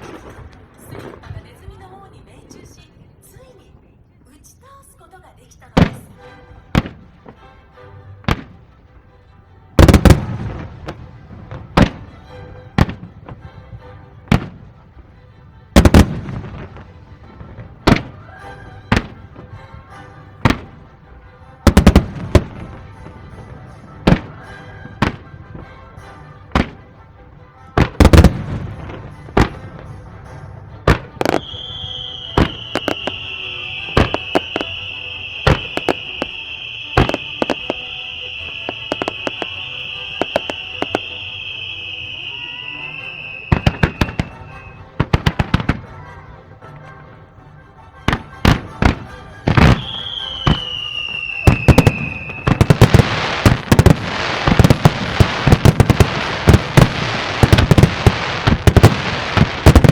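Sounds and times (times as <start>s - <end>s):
fireworks bangs and booms: 0.0s - 8.8s, 9.8s - 47.3s, 48.0s - 59.9s
background music: 0.0s - 59.9s
high steady whistling tone: 31.2s - 44.9s, 49.6s - 58.8s.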